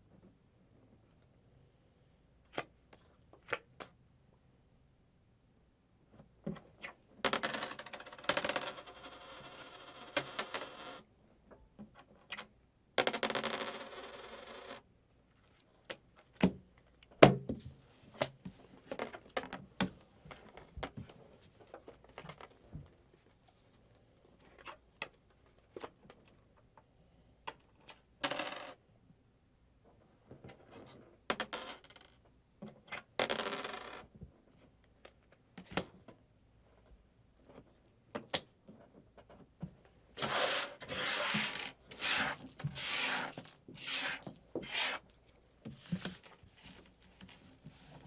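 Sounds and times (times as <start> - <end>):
coins clinking: 28.2 - 28.7
playing cards sliding: 40.2 - 45.1.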